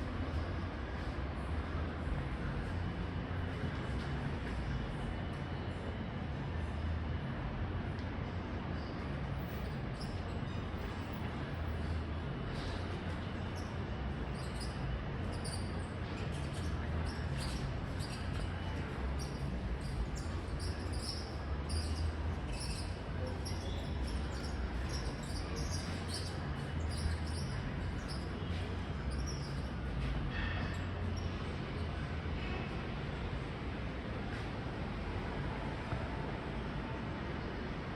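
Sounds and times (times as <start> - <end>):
bearing ticks and squeaks: 11.8 - 13.7, 14.3 - 31.4.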